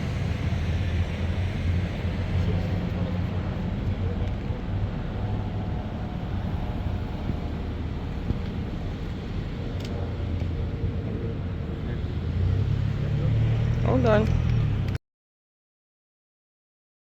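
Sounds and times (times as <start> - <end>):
car engine and road noise: 0.0 - 15.0.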